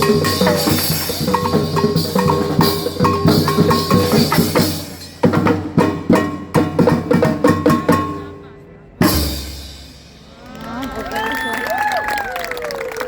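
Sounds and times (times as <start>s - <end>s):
live drumming: 0.0s - 8.4s, 9.0s - 10.5s.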